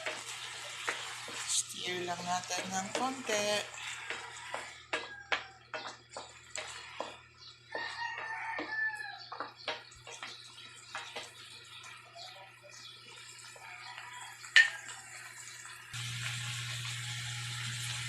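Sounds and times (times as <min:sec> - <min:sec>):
utensil tapping a pan: 0:00.0 - 0:01.5, 0:02.2 - 0:11.4
rooster crowing: 0:03.8 - 0:05.8, 0:07.8 - 0:09.4, 0:13.6 - 0:15.4.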